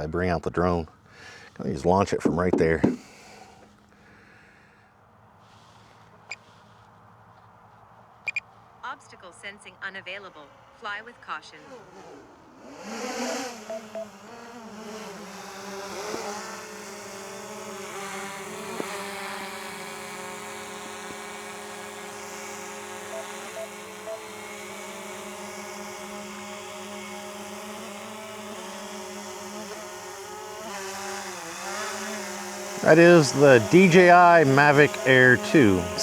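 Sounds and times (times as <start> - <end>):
drone propellers buzzing: 13.4 - 36.0.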